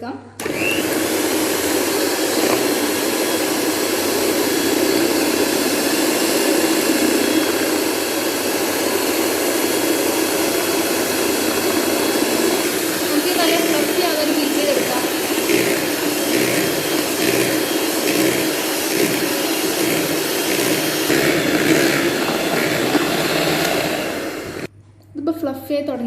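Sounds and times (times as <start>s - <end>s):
electric beater whipping cream: 0.4s - 24.7s.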